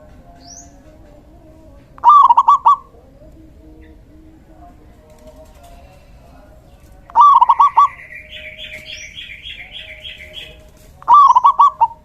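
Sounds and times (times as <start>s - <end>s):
dove cooing: 2.0s - 4.0s, 7.0s - 12.0s
high bird chirps: 7.1s - 12.0s.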